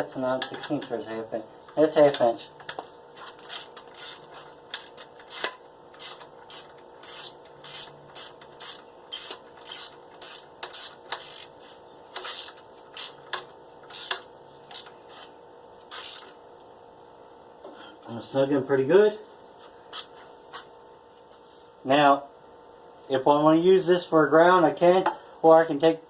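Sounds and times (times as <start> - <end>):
ratchet wrench rasping: 2.0 - 14.9, 15.9 - 16.4.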